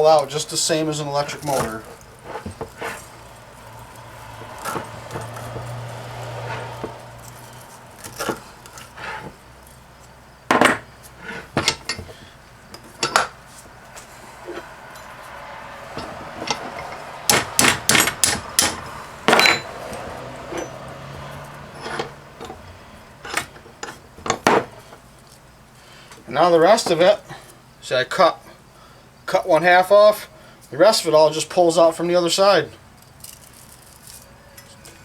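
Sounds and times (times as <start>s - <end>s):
hand tools knocking on metal: 15.9s - 22.6s.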